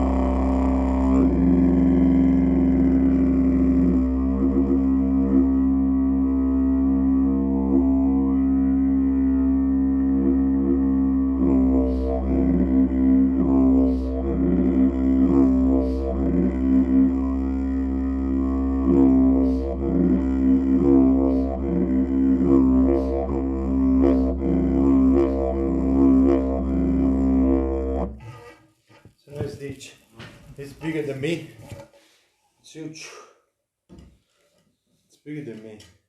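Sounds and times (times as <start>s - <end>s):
didgeridoo drone: 0.0s - 28.3s.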